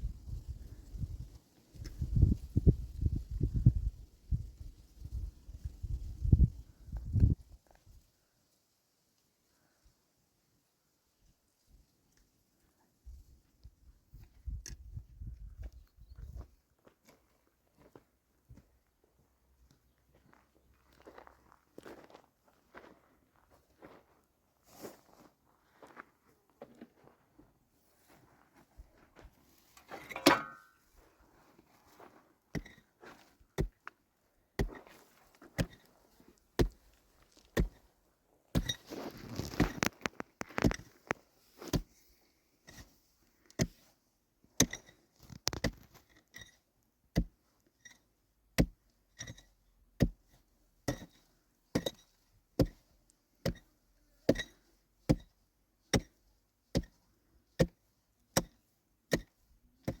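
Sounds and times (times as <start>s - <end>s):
rustling and scraping: 27.9s - 34.0s, 34.6s - 46.6s.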